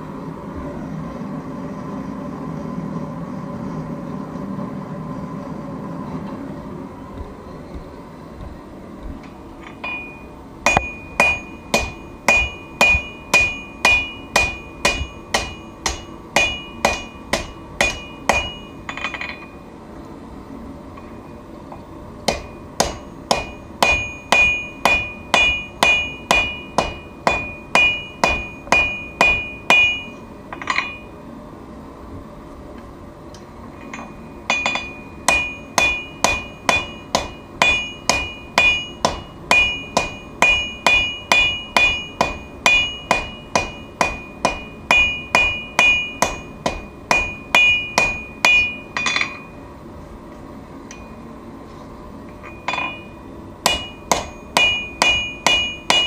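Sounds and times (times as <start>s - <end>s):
hammer striking steel on anvil: 9.6s - 19.6s, 21.0s - 31.2s, 33.8s - 49.6s, 50.9s - 51.3s, 52.3s - 56.0s.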